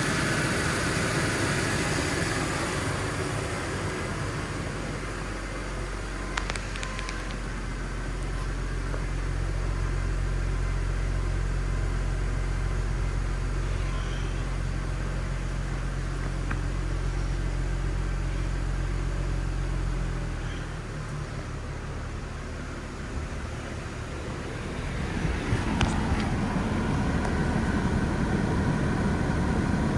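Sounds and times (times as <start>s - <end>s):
car engine humming: 0.0s - 29.9s.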